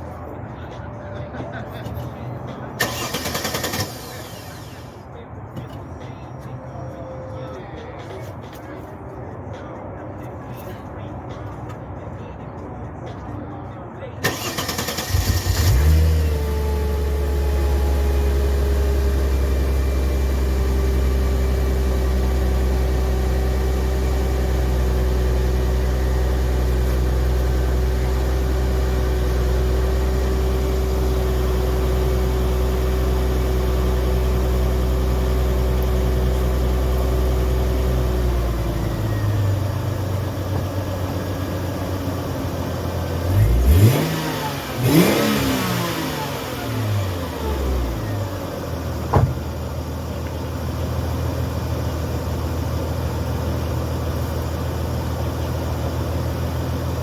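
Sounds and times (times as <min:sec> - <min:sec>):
car engine idling: 0:00.0 - 0:10.5, 0:14.2 - 0:57.0
engine revving: 0:14.2 - 0:19.7, 0:43.1 - 0:48.3.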